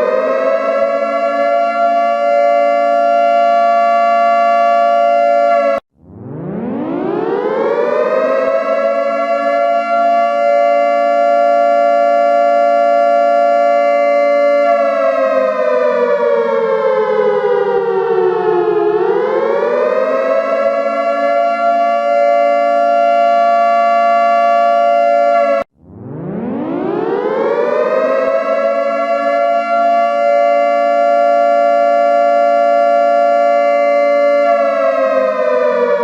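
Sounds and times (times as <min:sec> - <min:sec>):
air-raid siren: 0:00.0 - 0:36.0.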